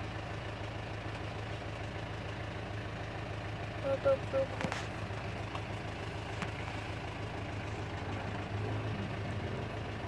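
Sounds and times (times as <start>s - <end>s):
road noise: 0.0s - 10.0s
vehicle engine humming: 0.0s - 10.0s.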